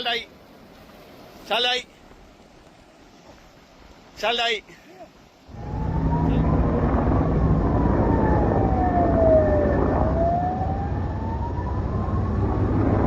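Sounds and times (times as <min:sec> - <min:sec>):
emergency vehicle siren wailing: 0:05.5 - 0:13.0
heavy low rumble: 0:05.5 - 0:13.0.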